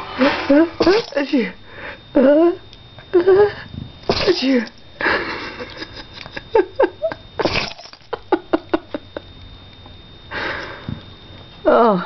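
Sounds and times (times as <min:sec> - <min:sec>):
pet sneezing: 0:04.1 - 0:04.7, 0:07.4 - 0:07.9.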